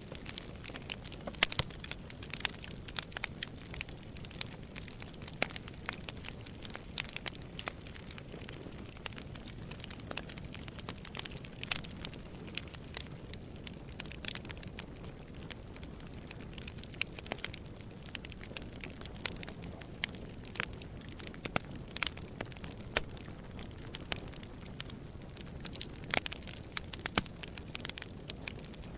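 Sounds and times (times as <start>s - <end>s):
wood fire crackling and popping: 0.0s - 28.9s.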